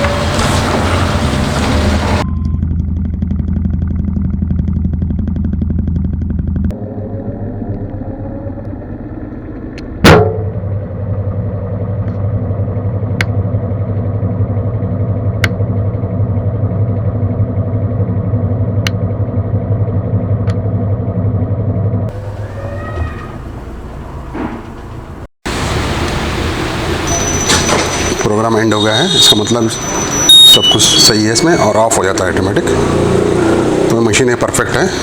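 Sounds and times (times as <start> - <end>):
washing machine drum spinning: 0.0 - 28.2
loud knock: 10.0 - 10.6.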